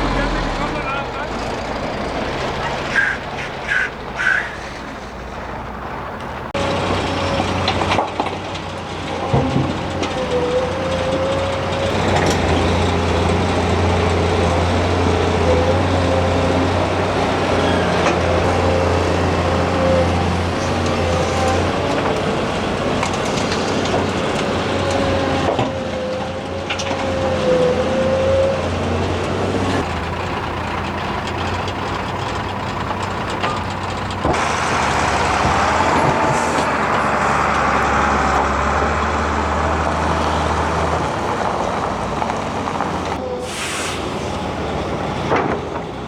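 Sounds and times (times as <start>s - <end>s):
excavator diesel engine: 0.0s - 46.0s
short hiss: 43.4s - 44.3s.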